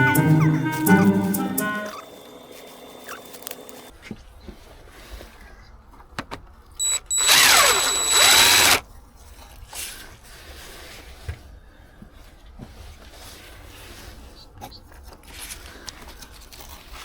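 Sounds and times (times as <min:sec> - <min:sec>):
power drill motor whine: 0:06.8 - 0:08.8.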